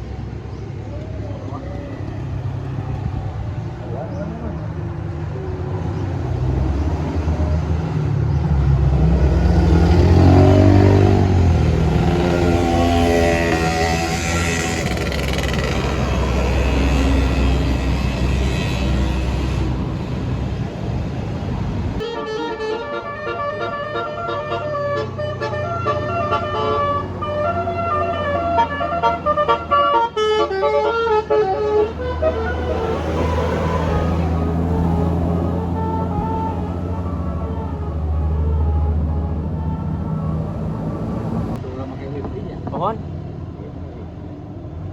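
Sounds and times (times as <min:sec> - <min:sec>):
bus engine revving: 0:06.2 - 0:22.0, 0:23.0 - 0:41.6.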